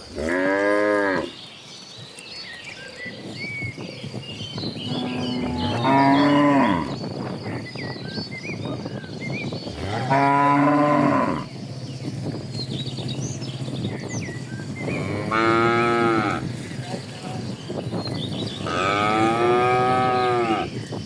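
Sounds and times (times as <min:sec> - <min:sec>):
cattle mooing: 0:04.9 - 0:06.9, 0:09.8 - 0:11.5, 0:14.9 - 0:16.6, 0:18.6 - 0:20.7.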